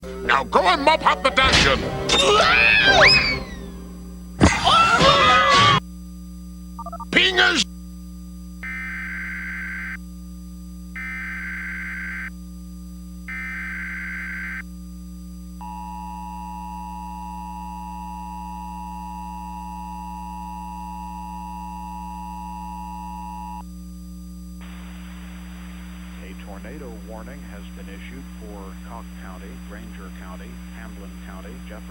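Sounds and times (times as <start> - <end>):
screeching data bursts: 2.1 - 3.8, 4.6 - 5.8
steady low hum: 2.9 - 31.9
two-tone attention signal: 15.6 - 23.6
hiss of noise: 24.6 - 26.3.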